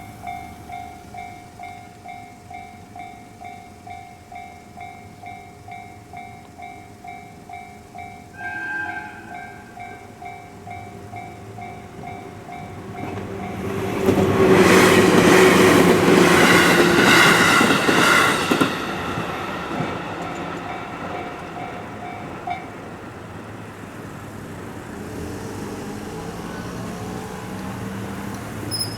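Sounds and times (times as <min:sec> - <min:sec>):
level-crossing alarm dinging: 0:00.0 - 0:13.8
electric train passing: 0:00.0 - 0:28.9
horn-like tone: 0:08.3 - 0:10.2
train wheels clacking over rail joints: 0:11.1 - 0:22.9.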